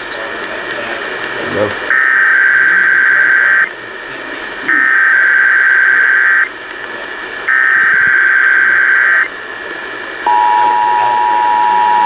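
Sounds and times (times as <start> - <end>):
buzzy digital data bursts: 1.4 - 12.0
two-tone attention signal: 10.3 - 12.0.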